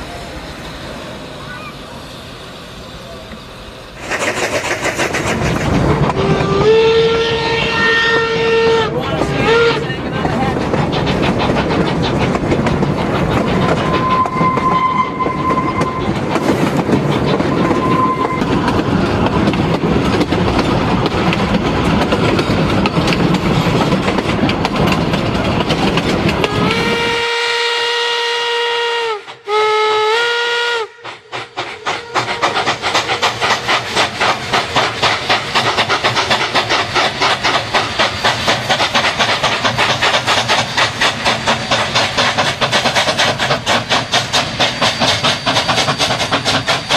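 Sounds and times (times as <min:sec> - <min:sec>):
steam train rumble and rattle: 0:00.0 - 0:46.9
steam whistle blasts: 0:06.2 - 0:09.8, 0:13.9 - 0:16.0, 0:17.6 - 0:18.5, 0:26.4 - 0:31.0.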